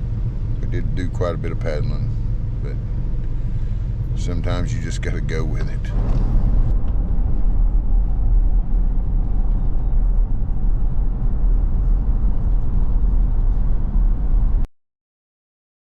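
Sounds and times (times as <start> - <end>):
road and engine noise: 0.0 - 14.7.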